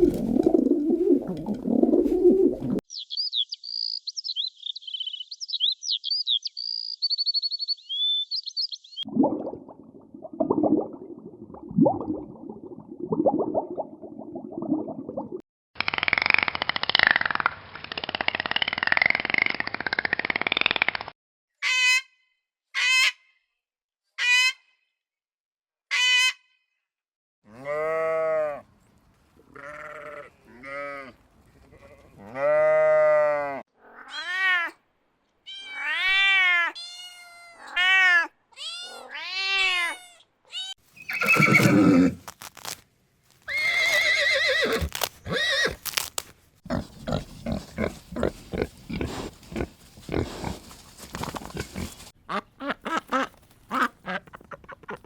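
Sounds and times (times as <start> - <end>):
animal bleating: 27.5 - 28.6, 29.5 - 34.8, 35.5 - 42.3
rapid short animal calls: 41.0 - 42.7.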